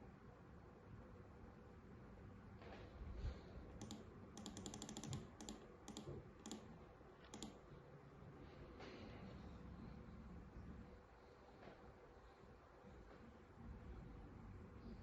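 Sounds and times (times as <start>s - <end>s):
faint clicking: 3.7s - 7.6s.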